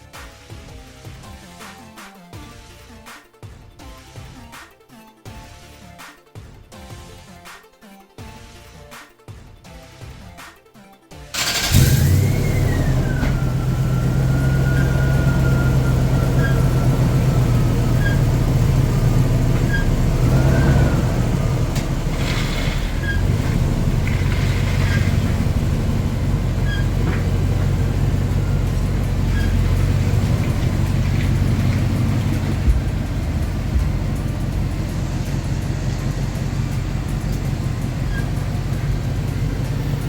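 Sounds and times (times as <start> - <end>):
pickup truck engine hum: 11.4 - 40.0.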